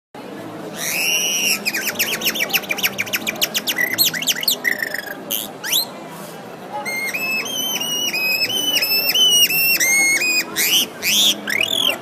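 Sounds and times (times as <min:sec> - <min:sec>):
bird calling: 0:00.7 - 0:05.9, 0:06.8 - 0:12.0
sweeping bird chirps: 0:00.8 - 0:05.9.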